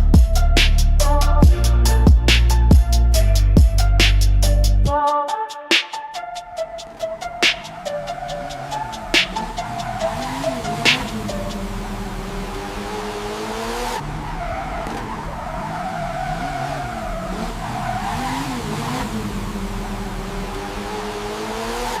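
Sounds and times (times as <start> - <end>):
deep bass: 0.0 - 4.9
gliding synth notes: 6.0 - 18.2.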